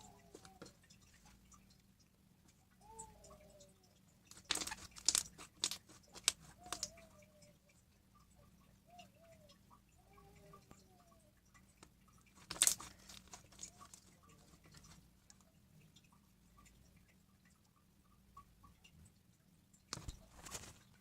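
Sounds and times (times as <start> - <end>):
slime squishing and crackling: 4.3 - 6.9, 12.4 - 14.9.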